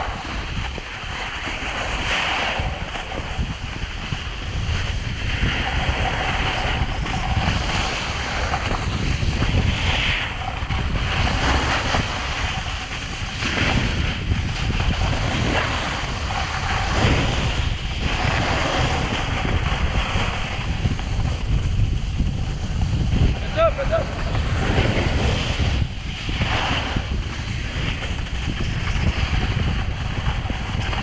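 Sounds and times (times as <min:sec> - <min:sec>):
snowboard edges scraping snow: 0:00.0 - 0:10.4, 0:11.0 - 0:22.9, 0:24.0 - 0:31.0
wind buffeting microphone: 0:00.0 - 0:31.0.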